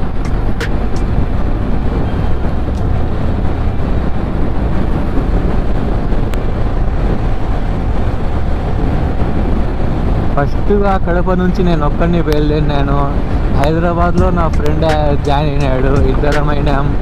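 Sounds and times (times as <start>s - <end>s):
wind rushing over microphone: 0.0s - 17.0s
motorcycle engine running: 13.6s - 16.5s.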